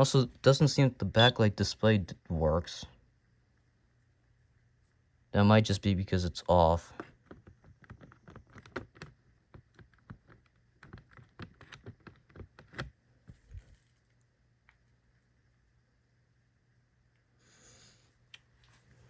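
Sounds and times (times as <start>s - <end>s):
small parts clicking and tapping: 7.0s - 12.9s.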